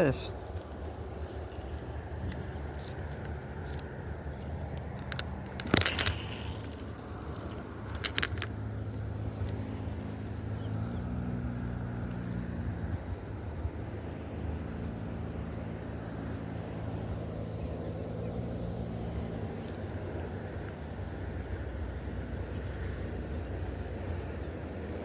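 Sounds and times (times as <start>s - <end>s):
engine humming: 0.0s - 25.0s
cluster of clicks: 0.3s - 8.7s.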